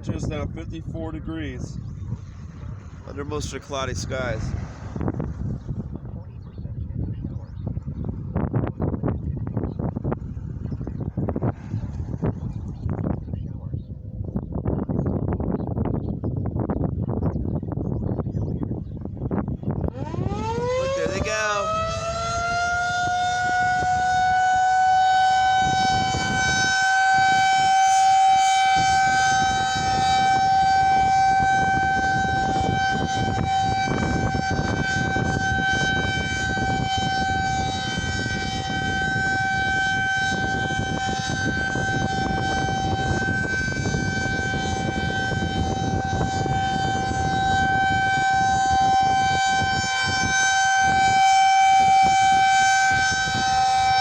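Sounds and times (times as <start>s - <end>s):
warning sirens steady tone: 18.6s - 54.0s.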